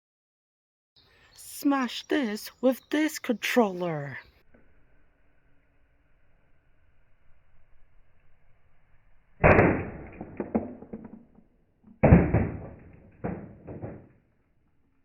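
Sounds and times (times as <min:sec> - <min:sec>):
plastic controller being smashed: 0:09.5 - 0:11.3, 0:11.9 - 0:14.2.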